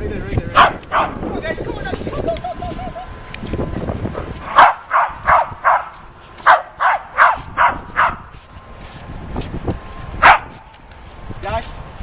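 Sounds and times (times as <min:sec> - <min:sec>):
dog barking: 0:00.6 - 0:01.2, 0:04.5 - 0:08.3, 0:10.2 - 0:10.6.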